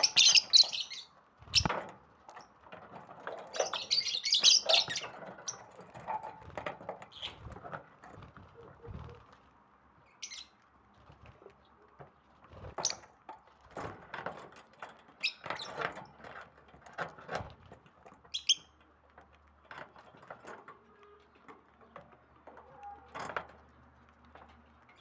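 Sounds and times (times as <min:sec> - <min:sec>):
birds chirping high: 0:00.0 - 0:01.8, 0:03.4 - 0:05.8, 0:07.1 - 0:07.6, 0:10.0 - 0:10.6, 0:15.2 - 0:15.8, 0:18.3 - 0:18.8.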